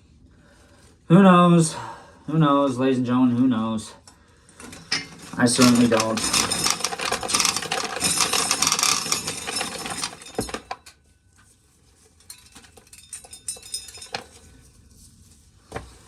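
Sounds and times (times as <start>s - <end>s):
corn kernels clattering: 5.0s - 10.8s.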